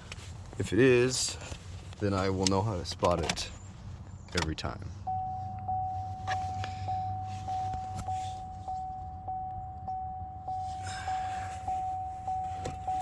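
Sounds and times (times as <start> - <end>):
car warning chime dinging: 4.4 - 13.0.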